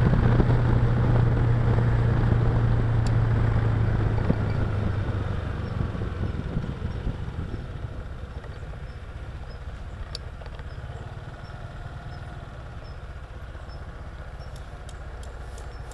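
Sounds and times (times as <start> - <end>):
scooter engine idling: 4.8 - 15.9.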